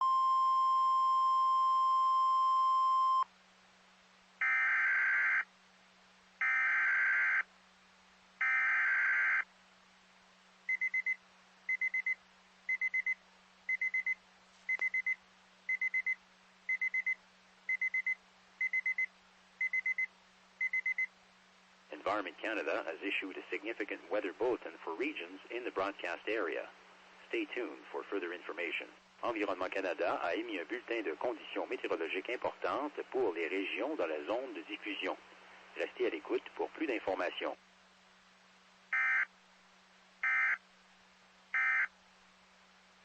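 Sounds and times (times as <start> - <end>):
short triple beeps: 0.0 - 3.2
steady alarm tone: 40.2 - 40.6, 41.6 - 41.9.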